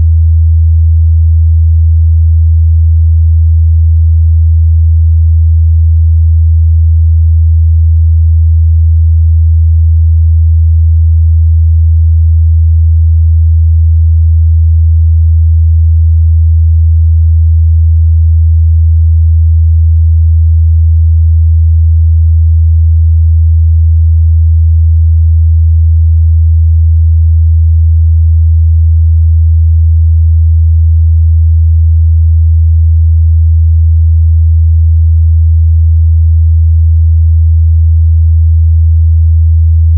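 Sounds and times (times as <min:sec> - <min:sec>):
deep bass test tone: 0:00.0 - 0:29.5.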